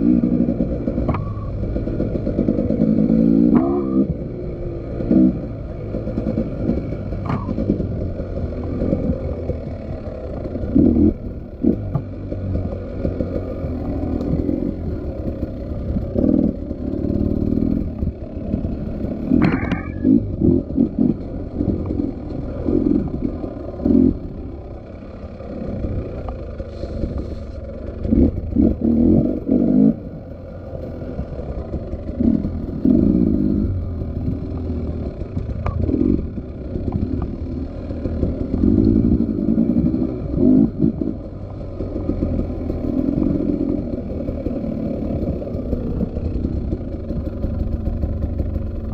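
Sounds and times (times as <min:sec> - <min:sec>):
motorcycle engine revving: 0:00.0 - 0:48.9.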